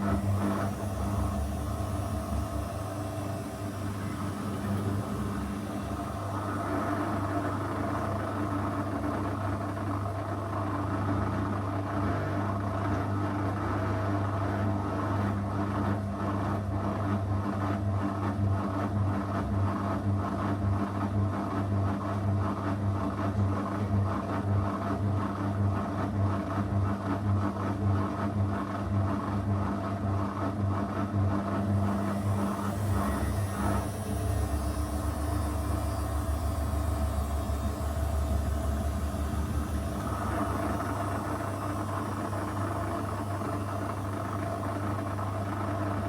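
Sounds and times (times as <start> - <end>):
hiss: 0.0 - 9.1, 31.6 - 46.0
washing machine motor hum: 0.0 - 11.9, 31.1 - 46.0.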